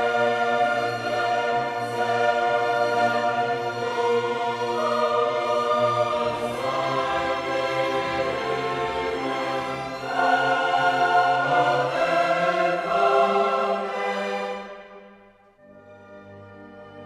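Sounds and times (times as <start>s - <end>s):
orchestral music with choir: 0.0s - 17.0s.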